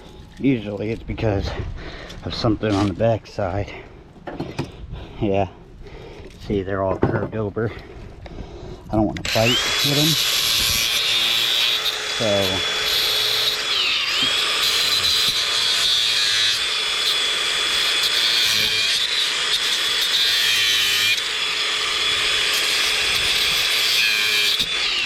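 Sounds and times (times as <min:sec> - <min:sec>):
power cutting tool whining: 0:09.2 - 0:25.0.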